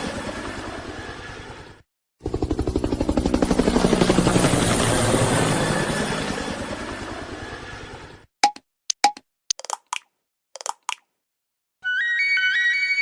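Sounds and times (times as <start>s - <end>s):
helicopter rotor chopping: 0.0s - 8.2s.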